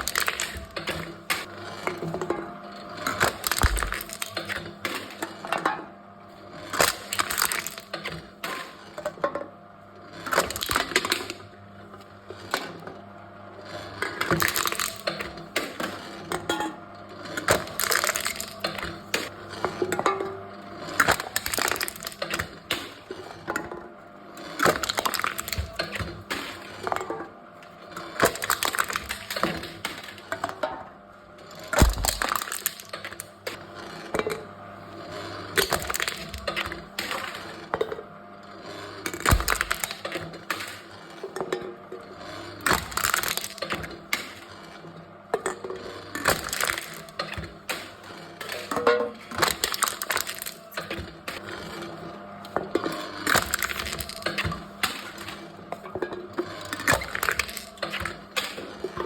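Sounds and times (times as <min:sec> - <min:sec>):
cans being crushed: 0:00.0 - 0:01.5, 0:03.1 - 0:04.7, 0:06.8 - 0:08.0, 0:14.2 - 0:15.3, 0:17.4 - 0:19.3, 0:21.0 - 0:22.6, 0:24.6 - 0:26.4, 0:28.2 - 0:29.9, 0:31.6 - 0:33.5, 0:35.6 - 0:36.8, 0:39.1 - 0:40.7, 0:42.6 - 0:43.9, 0:46.2 - 0:47.8, 0:48.5 - 0:51.4, 0:52.8 - 0:55.1, 0:56.6 - 0:58.6.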